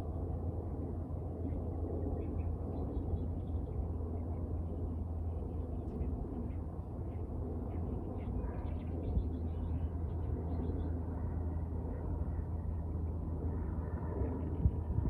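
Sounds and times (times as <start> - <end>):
wind rumble: 11.0 - 15.0.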